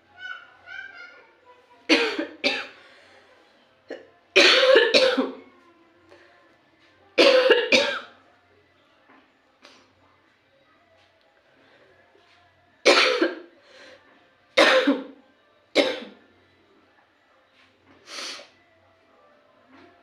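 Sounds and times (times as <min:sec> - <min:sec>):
woman coughing: 0:01.9 - 0:02.8, 0:03.9 - 0:05.4, 0:07.2 - 0:08.1, 0:12.9 - 0:13.4, 0:14.6 - 0:15.1, 0:15.8 - 0:16.2.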